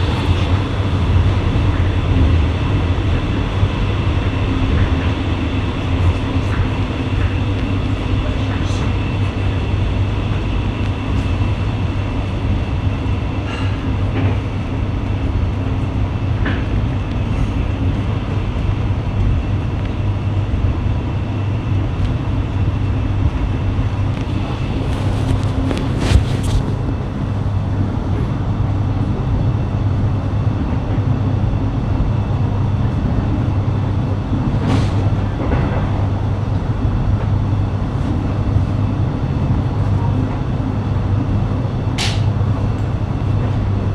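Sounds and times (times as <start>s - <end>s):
train running rumble: 0.0s - 43.9s.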